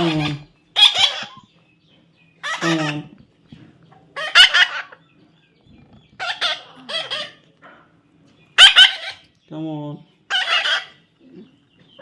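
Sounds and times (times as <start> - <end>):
baby parrot calling: 0.0 - 1.6, 2.4 - 3.2, 4.1 - 5.2, 5.8 - 7.6, 8.5 - 9.4, 10.3 - 12.0.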